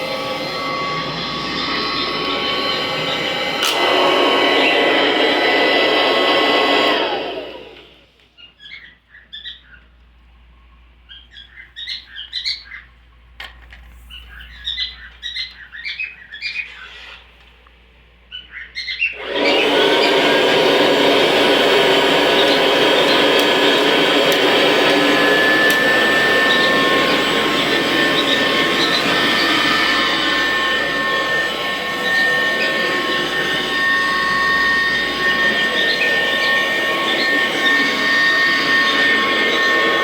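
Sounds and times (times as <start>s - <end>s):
birds chirping: 0.0s - 7.7s, 8.4s - 17.5s, 18.2s - 40.0s
vacuum cleaner motor whining: 0.0s - 8.3s, 19.1s - 40.0s.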